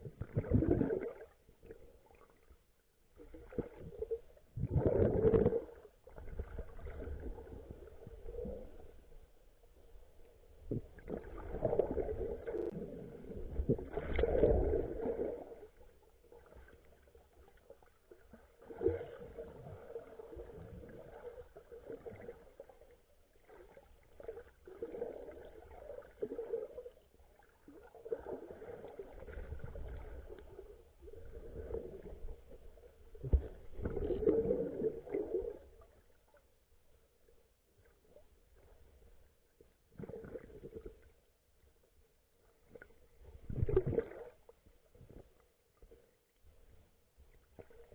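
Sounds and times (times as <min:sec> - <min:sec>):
muffled underwater sloshing: 0:00.0 - 0:47.9.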